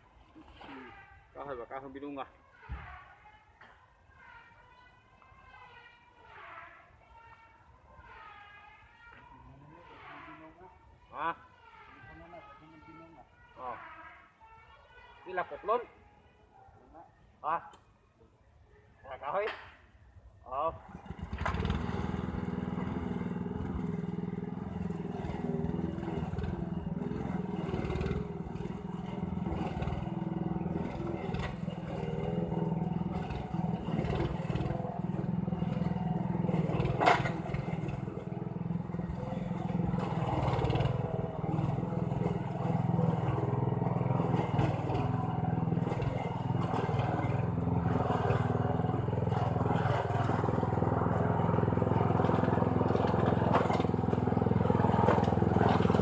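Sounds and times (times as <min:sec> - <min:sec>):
lawn mower engine running: 0:20.8 - 0:56.0.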